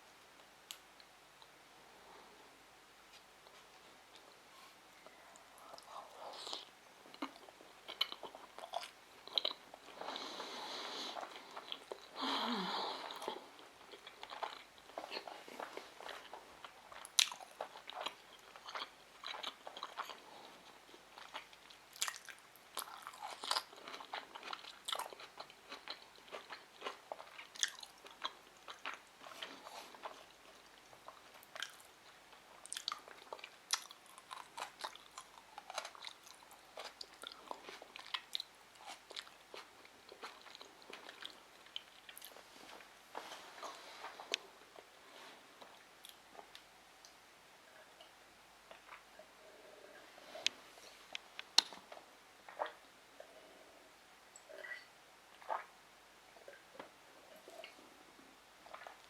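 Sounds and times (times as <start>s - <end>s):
chewing with wet mouth clicks: 5.7s - 10.0s, 16.1s - 20.2s, 21.2s - 42.4s.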